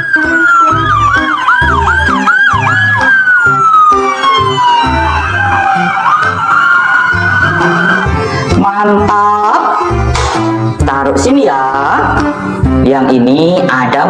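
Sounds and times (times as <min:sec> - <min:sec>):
police siren: 0:00.0 - 0:10.6
music with steady beat: 0:00.0 - 0:13.2.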